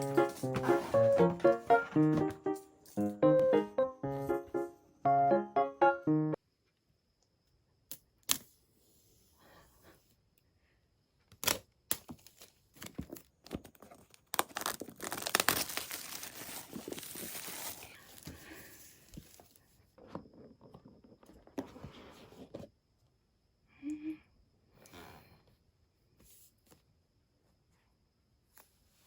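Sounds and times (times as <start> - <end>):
packaging crinkling and clicking: 11.4 - 17.9
packaging tearing: 13.5 - 18.0.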